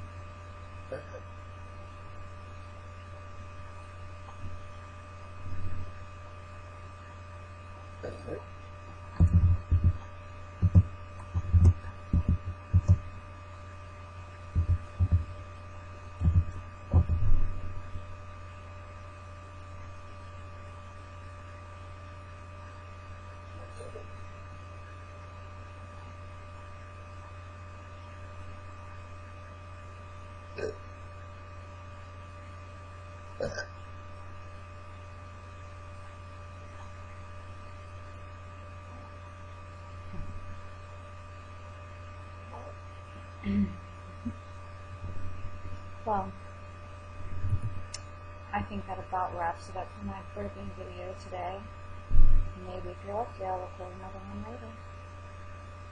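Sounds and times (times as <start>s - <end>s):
electrical hum: 0.0s - 55.9s
short low thumps: 9.2s - 13.1s, 14.5s - 15.3s, 16.2s - 17.7s, 47.3s - 47.9s, 52.1s - 52.6s.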